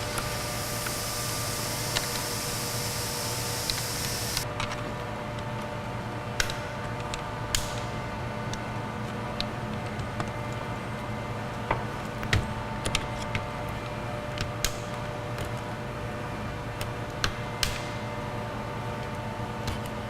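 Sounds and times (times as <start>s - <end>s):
steady background hum: 0.0s - 20.0s.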